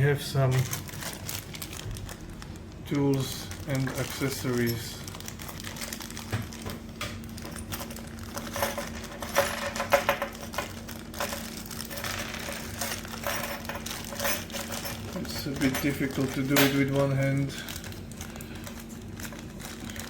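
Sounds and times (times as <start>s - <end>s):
small metal parts clinking: 3.1s - 6.0s, 7.4s - 17.9s.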